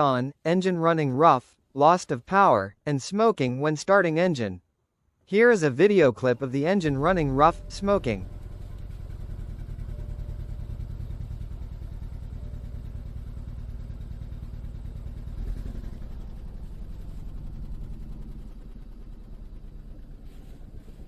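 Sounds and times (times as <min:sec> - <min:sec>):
car engine idling roughly: 0:06.9 - 0:21.0.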